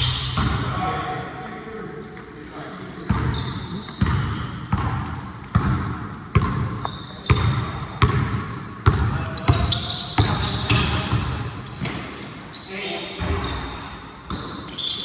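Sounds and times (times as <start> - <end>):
basketball bouncing on court: 0.0 - 0.7, 3.1 - 12.2, 13.2 - 14.7
sneakers squeaking: 0.0 - 0.7, 2.0 - 2.4, 3.0 - 15.0.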